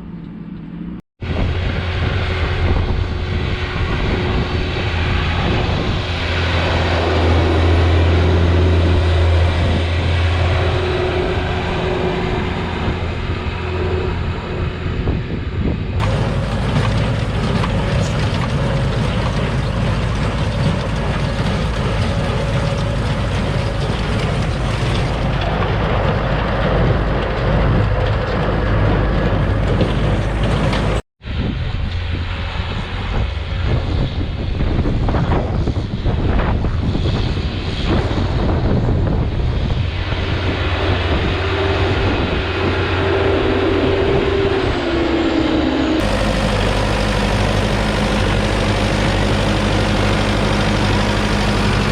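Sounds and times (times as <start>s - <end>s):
tractor engine rumbling: 0.2s - 31.0s, 46.0s - 51.9s.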